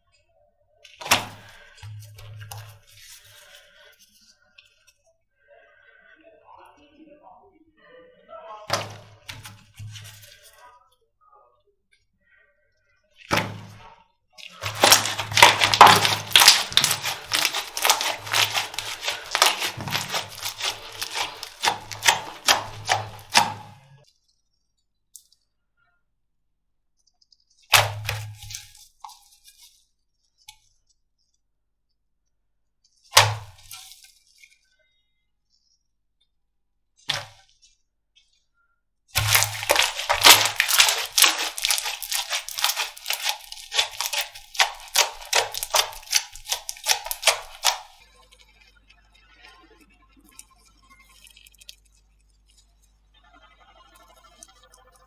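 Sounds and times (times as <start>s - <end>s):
slime crackling and popping: 14.6s - 23.8s, 27.7s - 28.6s, 39.2s - 48.0s.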